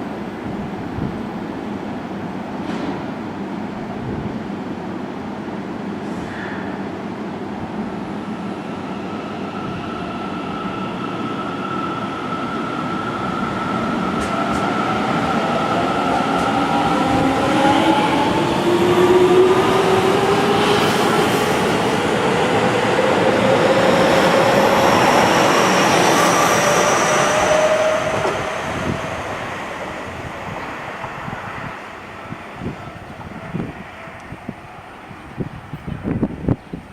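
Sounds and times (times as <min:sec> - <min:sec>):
train wheels on rails: 0:11.6 - 0:31.9.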